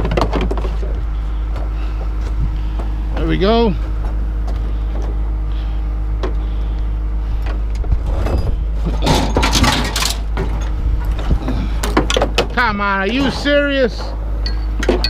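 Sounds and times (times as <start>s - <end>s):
vehicle engine idling: 0.0s - 9.6s
clattering rattling noise: 7.9s - 15.0s.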